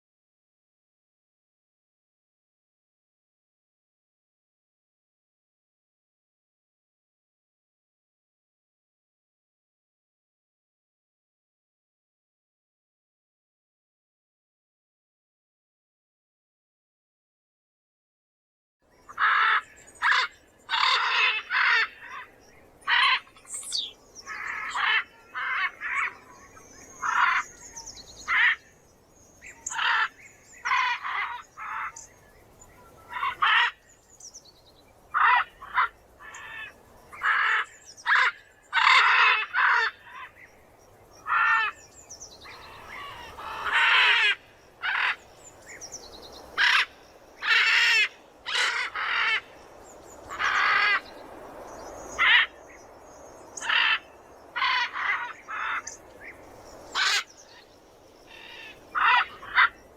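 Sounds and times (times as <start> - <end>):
macaw squawking: 19.2 - 22.3, 46.6 - 49.5, 54.6 - 56.0, 57.0 - 57.3, 58.3 - 59.8.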